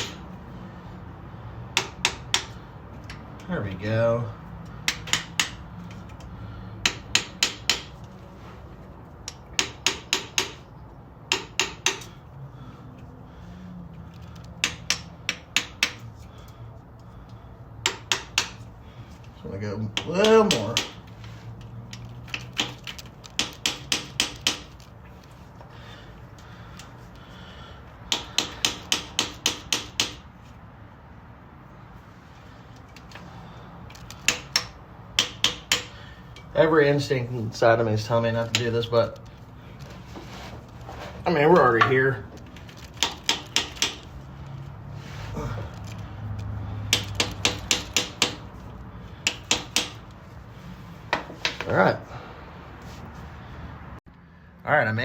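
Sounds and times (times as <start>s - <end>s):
hammer tapping on chisel: 0.0s - 0.2s, 1.7s - 3.2s, 4.8s - 5.6s, 6.8s - 8.0s, 9.2s - 10.7s, 11.3s - 12.1s, 14.6s - 16.1s, 17.8s - 18.6s, 19.9s - 21.1s, 22.4s - 24.8s, 28.1s - 30.3s, 34.2s - 36.5s, 43.0s - 44.1s, 46.9s - 48.5s, 49.2s - 50.1s.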